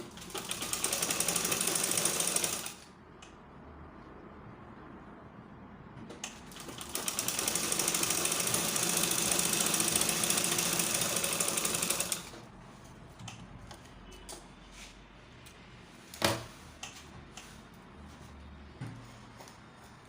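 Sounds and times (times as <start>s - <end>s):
sewing machine needle clatter: 6.2s - 12.4s.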